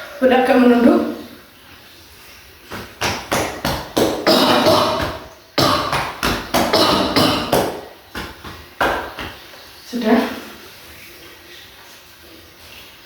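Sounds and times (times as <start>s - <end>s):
hand clapping on a back: 2.7s - 9.4s.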